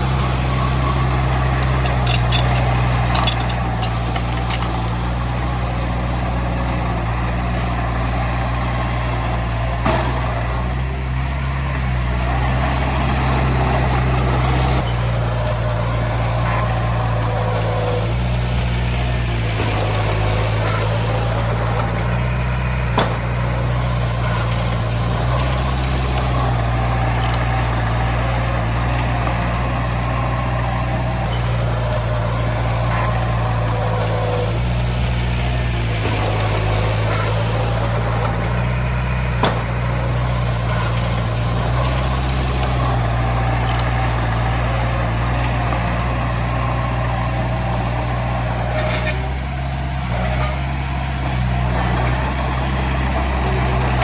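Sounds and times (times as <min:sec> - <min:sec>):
heavy diesel machinery running: 0:00.0 - 0:54.0
sharp metal knocks: 0:35.9 - 0:40.0.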